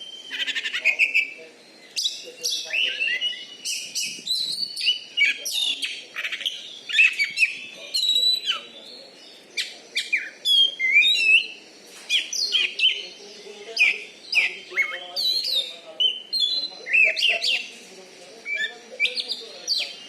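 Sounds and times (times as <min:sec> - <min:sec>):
magpie-robin singing: 0:00.0 - 0:20.0.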